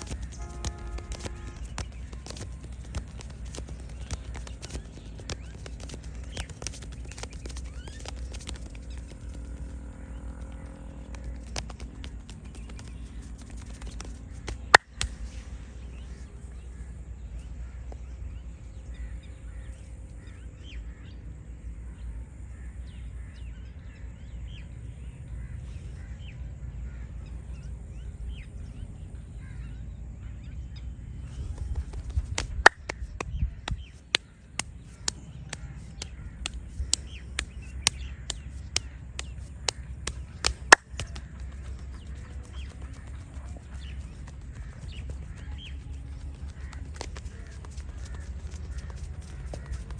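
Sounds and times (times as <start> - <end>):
bird calls: 0.0 - 21.2, 22.6 - 49.9
low steady rumble: 0.0 - 49.9
head massage cracks: 31.8 - 43.2
crow cawing: 46.5 - 49.9.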